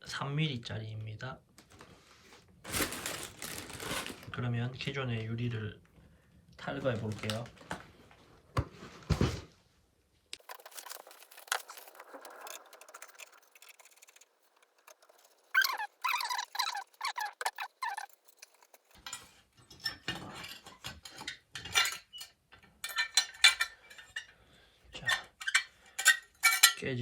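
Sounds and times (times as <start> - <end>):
metal and glass clicks: 10.4 - 24.3
scraping and crackling glass: 10.4 - 24.3, 25.0 - 26.8.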